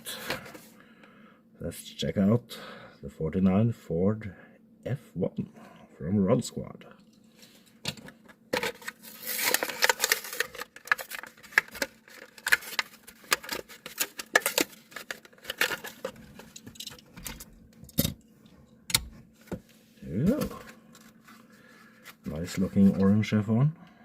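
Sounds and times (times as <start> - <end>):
plastic packaging crackling and tearing: 8.6 - 16.9.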